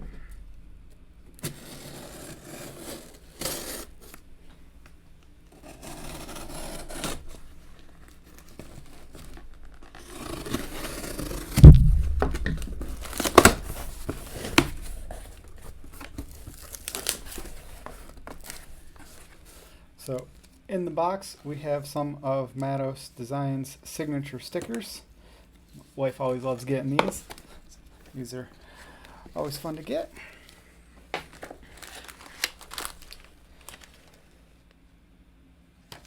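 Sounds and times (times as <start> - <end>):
tape tearing: 1.4 - 4.2, 5.6 - 19.6, 31.2 - 34.2
packing material crinkling: 5.6 - 20.6, 31.2 - 34.5
loud thump: 11.5 - 16.4.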